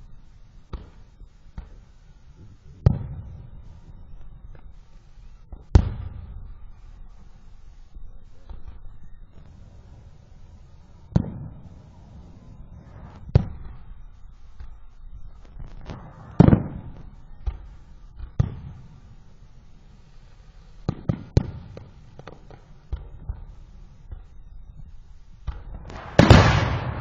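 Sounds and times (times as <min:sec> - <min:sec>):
fireworks bangs with echoes: 0:02.7 - 0:04.0, 0:05.6 - 0:06.7, 0:09.4 - 0:13.8, 0:15.4 - 0:19.3, 0:20.8 - 0:24.3, 0:25.4 - 0:27.0.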